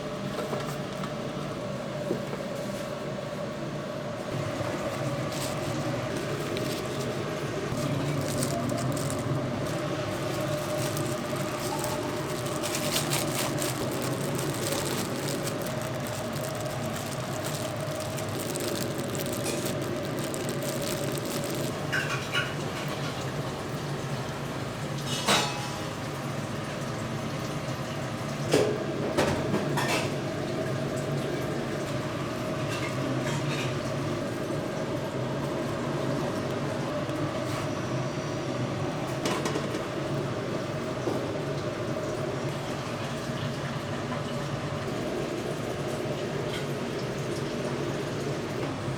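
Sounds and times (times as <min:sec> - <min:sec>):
machine hum: 0:04.6 - 0:22.1.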